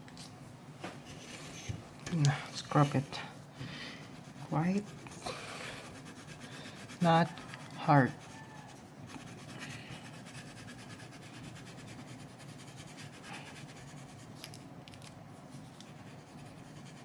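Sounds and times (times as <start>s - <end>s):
eraser rubbing on metal pins: 4.1s - 14.2s.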